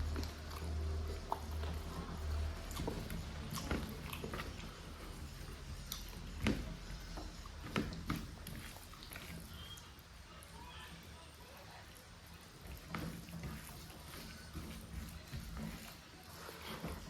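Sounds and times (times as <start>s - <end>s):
chewing with wet mouth clicks: 0.0s - 10.1s.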